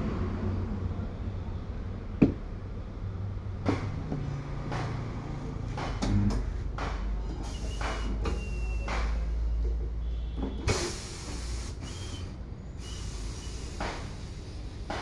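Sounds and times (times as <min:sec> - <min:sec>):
workshop machinery hum: 0:02.2 - 0:09.9, 0:10.5 - 0:15.0
compressed air hisses: 0:07.4 - 0:08.8, 0:10.7 - 0:15.0.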